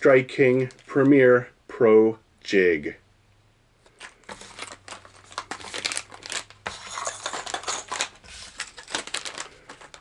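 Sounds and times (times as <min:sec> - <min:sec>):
plastic packaging crinkling: 0:00.3 - 0:01.2, 0:03.8 - 0:10.0.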